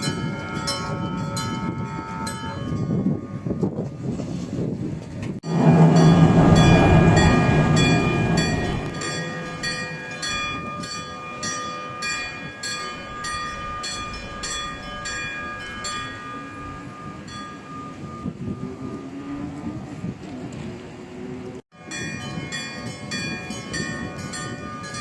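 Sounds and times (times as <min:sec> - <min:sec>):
tram rumbling over crossing: 0:05.2 - 0:12.3
crossing warning bell clanging: 0:05.4 - 0:19.2, 0:21.8 - 0:25.0.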